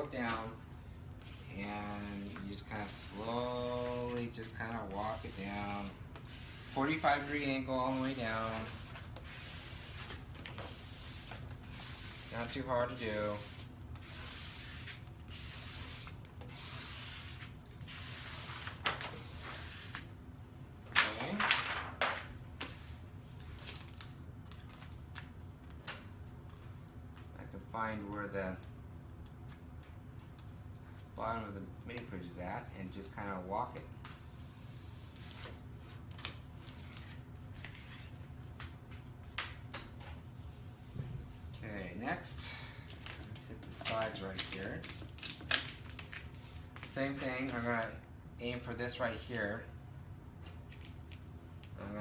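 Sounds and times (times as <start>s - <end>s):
steady low hum: 0.0s - 52.0s
hissy rubbing strokes on vinyl: 1.2s - 20.1s.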